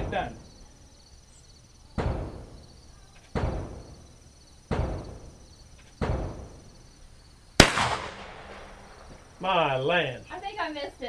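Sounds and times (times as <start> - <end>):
shotgun shot: 2.0 - 2.6, 3.3 - 3.8, 4.7 - 5.2, 6.0 - 6.5, 7.6 - 9.1
dull thuds: 2.0 - 4.1, 4.7 - 6.8.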